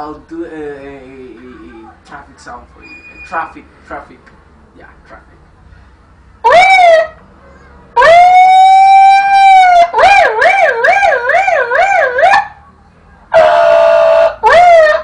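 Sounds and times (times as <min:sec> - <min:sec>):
boy imitating police siren: 0:06.5 - 0:12.6.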